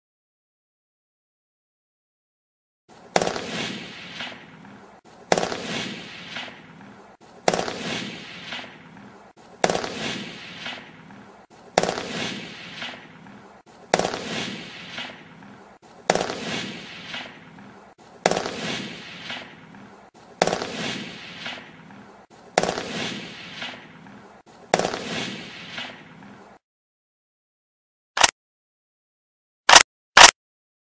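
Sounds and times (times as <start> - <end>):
rifle shots echoing: 3.1 - 22.0, 22.6 - 24.1.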